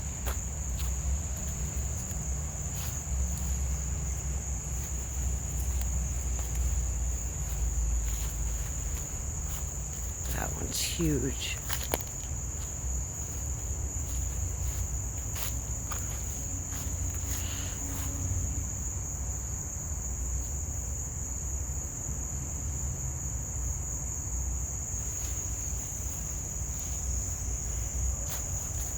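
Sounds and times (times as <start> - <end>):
steady low rumble: 0.0 - 18.9
insects chirring: 0.0 - 28.9.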